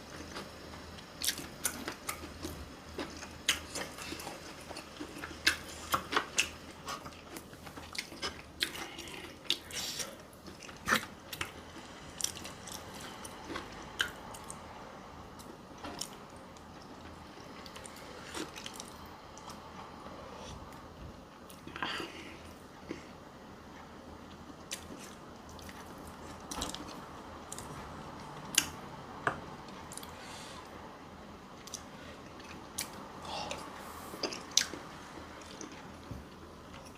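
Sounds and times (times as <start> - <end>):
chewing with wet mouth clicks: 1.2 - 14.6, 24.3 - 27.8, 34.2 - 35.9.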